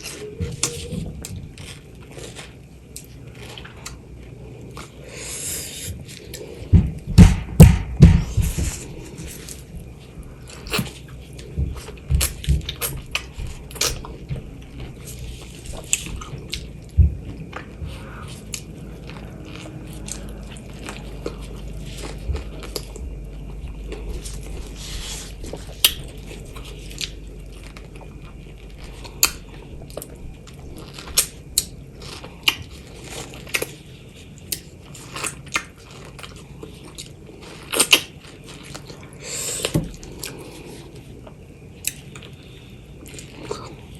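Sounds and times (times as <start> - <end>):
biting and chewing clicks: 9.0 - 33.8, 34.4 - 43.9.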